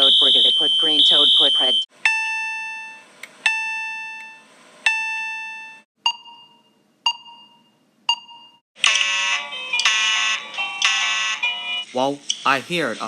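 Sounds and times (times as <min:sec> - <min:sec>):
harsh fire alarm horn pulsing: 0:00.0 - 0:01.9, 0:08.8 - 0:11.8
chime-like alarm tone: 0:00.0 - 0:11.8.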